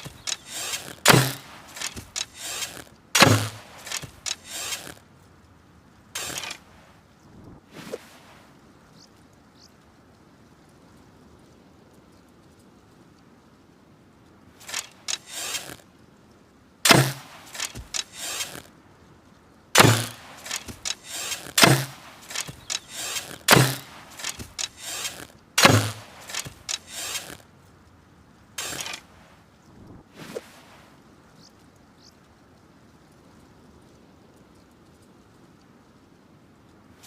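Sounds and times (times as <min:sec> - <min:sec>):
bow string release crack: 0:00.0 - 0:05.0, 0:06.2 - 0:06.6, 0:14.6 - 0:15.8, 0:16.9 - 0:18.7, 0:19.8 - 0:27.4, 0:28.6 - 0:29.1.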